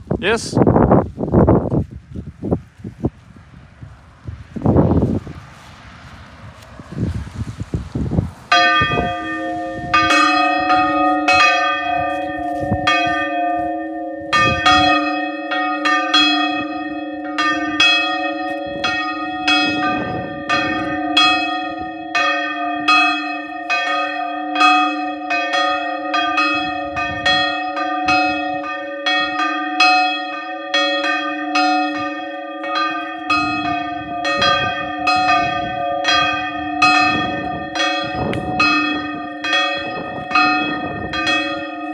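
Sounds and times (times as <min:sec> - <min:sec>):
church bells ringing: 0:08.5 - 0:41.9.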